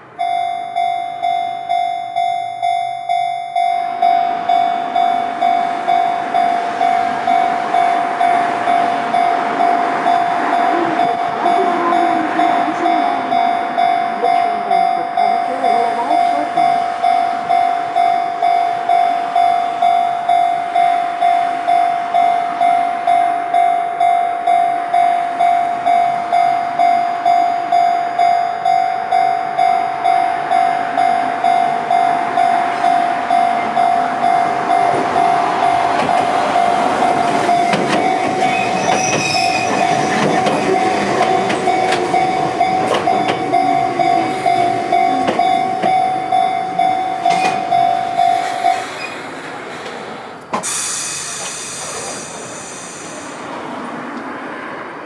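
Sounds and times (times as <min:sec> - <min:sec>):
train passing rumble: 0:00.0 - 0:55.0
level crossing bell ringing: 0:00.2 - 0:48.8
wheels clacking over rail joints: 0:29.6 - 0:52.5.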